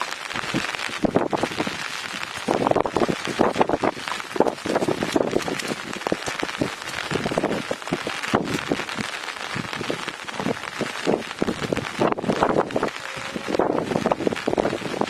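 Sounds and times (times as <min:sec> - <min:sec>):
raindrops striking a surface: 0:00.0 - 0:15.0.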